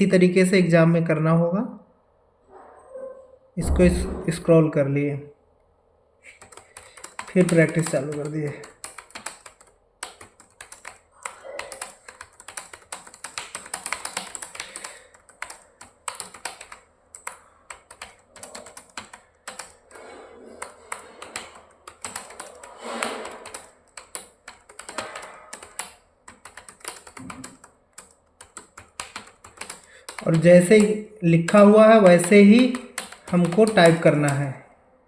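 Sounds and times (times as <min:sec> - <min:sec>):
keyboard typing clicks: 0:06.3 - 0:34.4.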